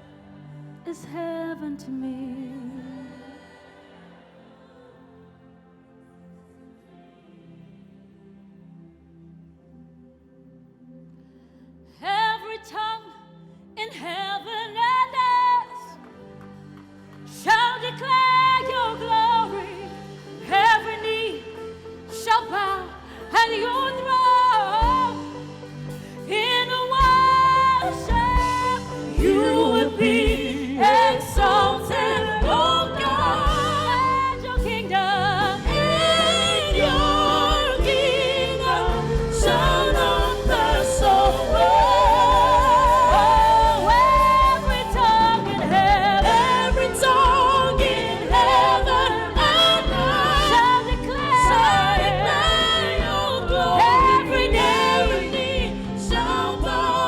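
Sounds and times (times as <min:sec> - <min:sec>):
choir singing gospel: 0:00.0 - 0:09.3, 0:12.0 - 0:57.0
band with steady beat: 0:35.6 - 0:51.6.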